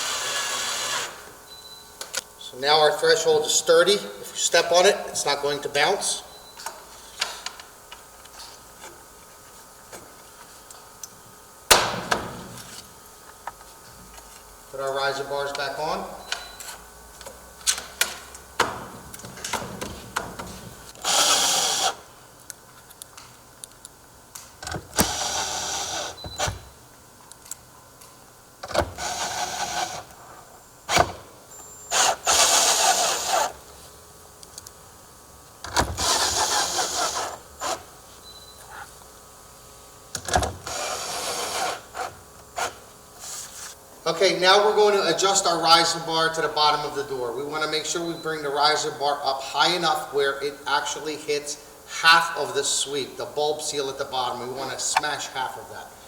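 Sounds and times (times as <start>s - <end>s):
cordless drill driving screws: 0.0s - 1.3s, 20.9s - 22.0s, 25.0s - 26.6s, 29.0s - 30.0s, 31.9s - 33.5s, 36.0s - 37.8s, 40.7s - 42.7s.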